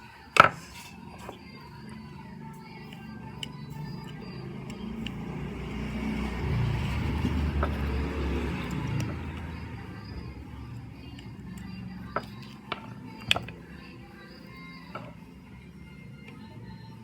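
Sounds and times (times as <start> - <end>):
motor vehicle passing by: 0.9 - 16.0.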